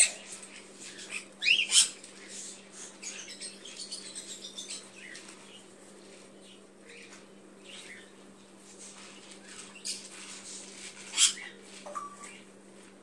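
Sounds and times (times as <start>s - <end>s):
parrotlets chirping: 0.0s - 5.7s, 11.0s - 12.4s
scratchy rustling and fluttering: 8.6s - 13.0s.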